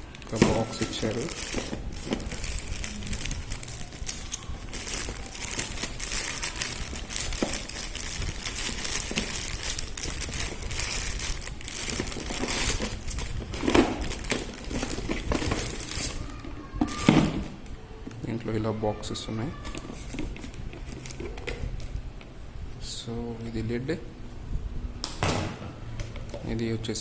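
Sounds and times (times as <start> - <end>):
packaging crinkling and rustling: 0.0 - 17.6.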